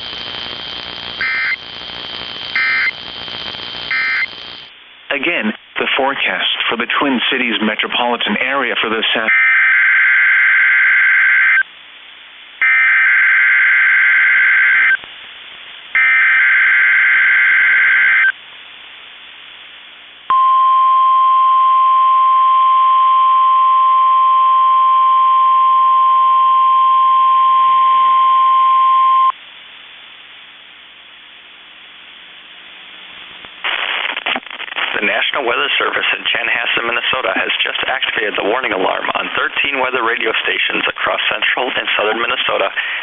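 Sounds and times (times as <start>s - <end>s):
rasping digital data bursts: 0.0s - 4.7s
steady warning alarm tone: 0.0s - 4.7s, 12.6s - 15.0s, 16.0s - 18.3s
faint radio hiss: 0.0s - 9.3s, 17.2s - 20.3s, 29.3s - 43.0s.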